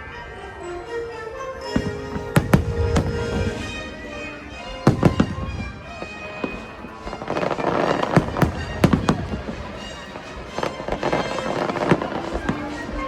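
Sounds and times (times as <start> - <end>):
music playing: 0.0 - 13.0
fireworks bangs: 1.8 - 13.0.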